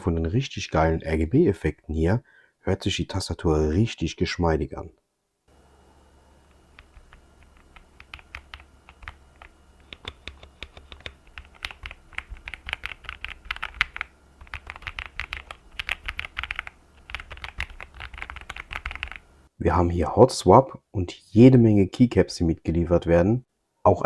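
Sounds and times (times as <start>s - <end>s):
mechanical keyboard typing: 6.7s - 19.2s.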